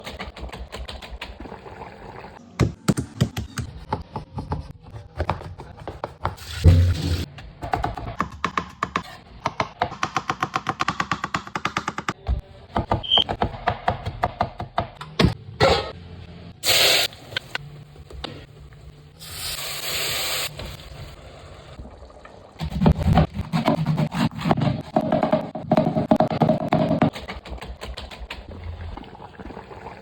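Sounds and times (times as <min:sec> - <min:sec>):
cooking hissing: 0:16.6 - 0:17.3, 0:19.2 - 0:21.2.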